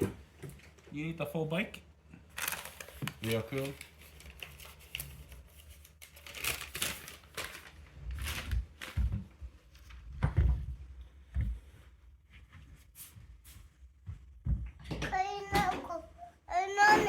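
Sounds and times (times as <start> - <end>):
packaging rustling and crinkling: 2.3 - 10.0.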